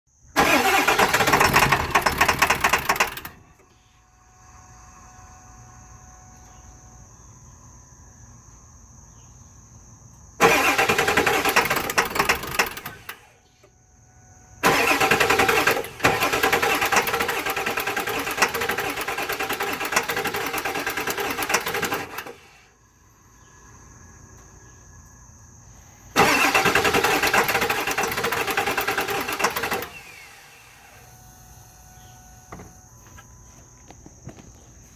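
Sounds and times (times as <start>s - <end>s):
diesel engine cranking on starter: 0.4s - 3.9s, 10.4s - 13.8s, 14.6s - 22.8s, 26.0s - 34.6s
faint high-pitched whine: 29.8s - 34.9s.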